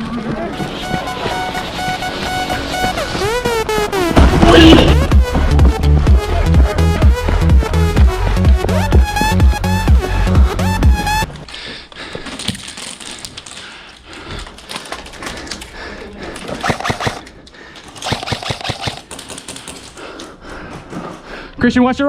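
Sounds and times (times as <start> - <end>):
background music: 0.0 - 11.4
airsoft guns firing bursts: 16.5 - 17.2, 18.0 - 20.0.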